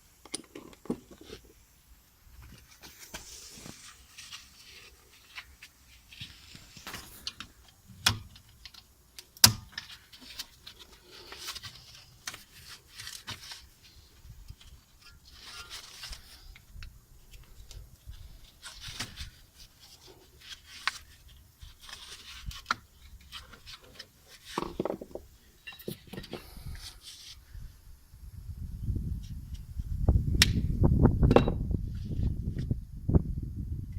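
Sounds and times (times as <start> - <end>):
tools and brake parts clinking: 23.4 - 26.4.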